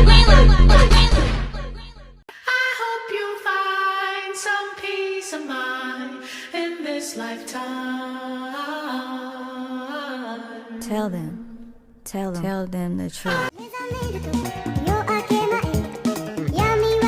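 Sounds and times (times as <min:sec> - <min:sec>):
person singing wordless notes: 0:13.3 - 0:17.0.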